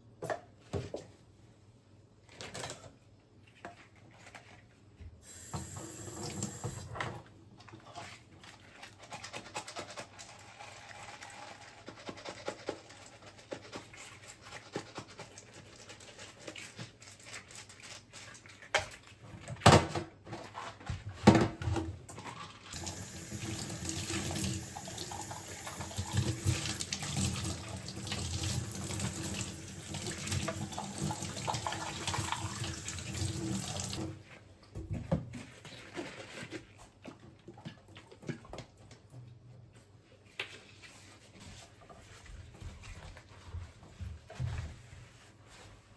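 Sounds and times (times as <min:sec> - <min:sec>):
water tap running into sink: 0:05.2 - 0:06.9, 0:22.8 - 0:34.1.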